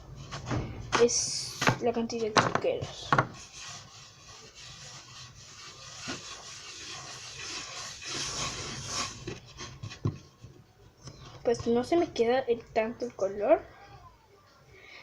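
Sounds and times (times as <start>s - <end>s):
hands rubbing dough on tabletop: 2.1s - 10.5s.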